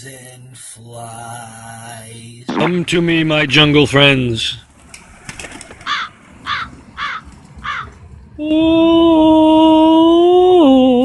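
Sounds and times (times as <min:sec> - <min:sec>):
short harsh caws: 0:05.8 - 0:08.0
man singing long ooh note: 0:08.4 - 0:11.0.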